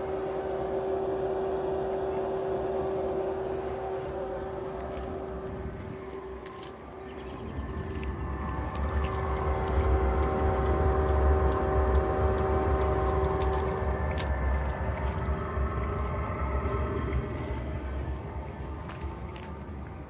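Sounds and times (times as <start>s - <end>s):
heater blower hum: 0.0s - 7.0s, 7.6s - 20.0s
low rumble: 0.0s - 20.0s
faint ticks: 6.4s - 20.0s.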